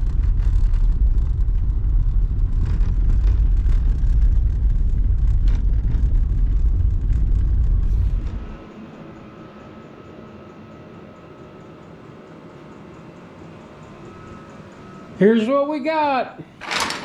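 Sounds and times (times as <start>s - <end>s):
road rumble inside moving vehicle: 0.0s - 10.6s
faint steady whine: 0.0s - 17.0s.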